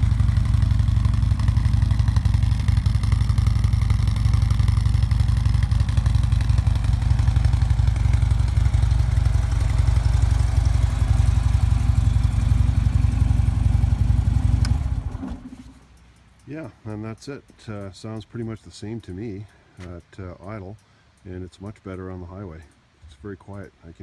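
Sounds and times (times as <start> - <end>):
motorcycle engine idling: 0.0 - 16.9.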